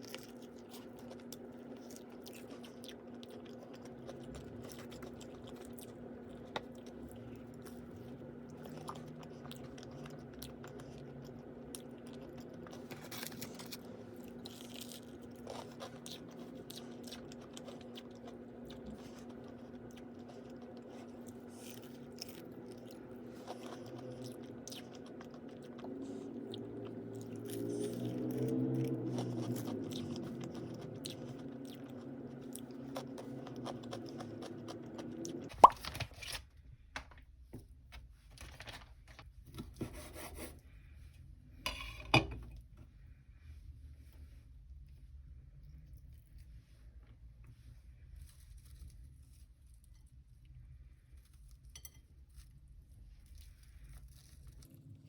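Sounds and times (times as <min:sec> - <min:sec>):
person chewing crunchy food: 0:00.0 - 0:36.4
steady low hum: 0:00.0 - 0:55.0.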